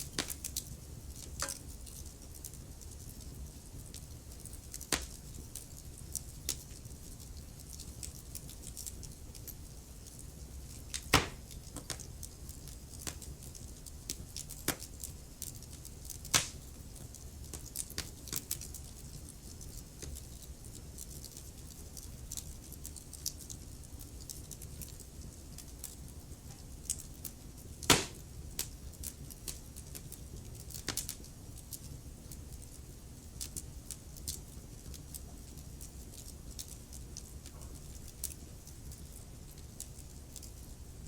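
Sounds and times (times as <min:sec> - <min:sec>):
low rumble of flames: 0:00.0 - 0:41.0
wood fire crackling and popping: 0:00.0 - 0:41.0.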